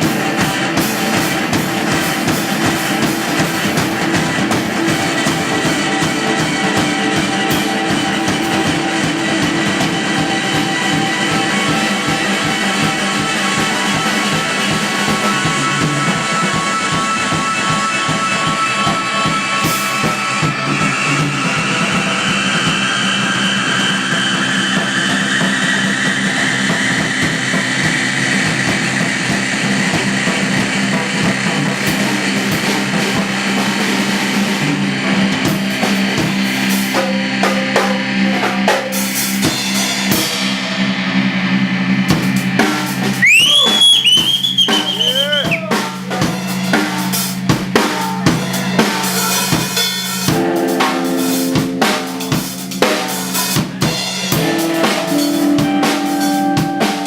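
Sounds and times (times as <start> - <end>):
live band playing: 0.0 - 57.0
rising tone: 43.2 - 45.6.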